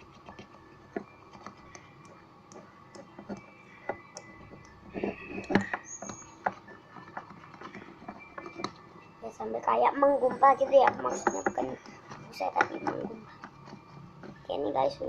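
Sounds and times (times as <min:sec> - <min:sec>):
spoon scraping a bowl: 0:03.0 - 0:09.2.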